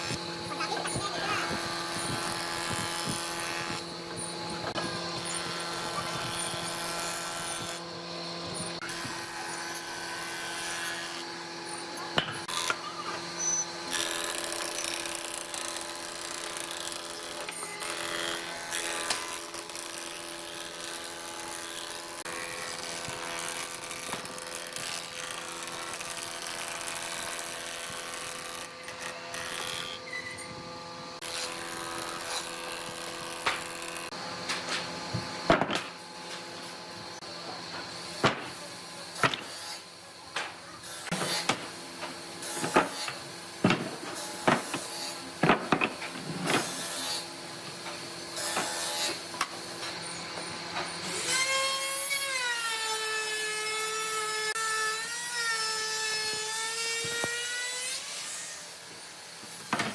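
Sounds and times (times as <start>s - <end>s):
power tool running on wood: 0.0s - 59.9s.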